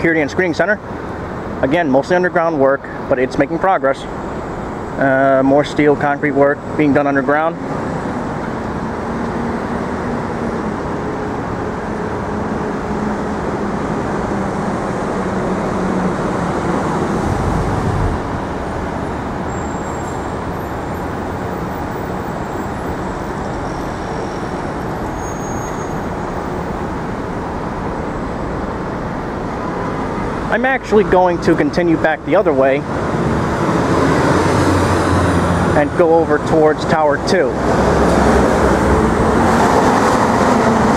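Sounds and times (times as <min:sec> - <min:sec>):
street traffic: 0:00.0 - 0:40.9
engine hum: 0:05.9 - 0:40.9
low rumble: 0:17.0 - 0:18.5.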